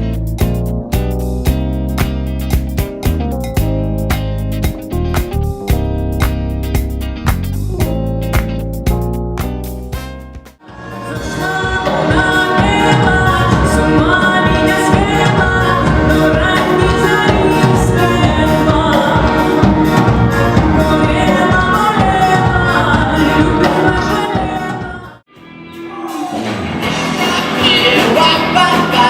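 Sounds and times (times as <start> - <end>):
song with vocals: 10.6 - 29.0.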